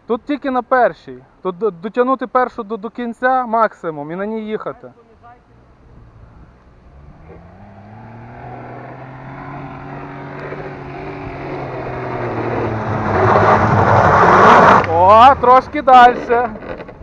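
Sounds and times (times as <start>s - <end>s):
car engine running hard: 5.7s - 15.1s.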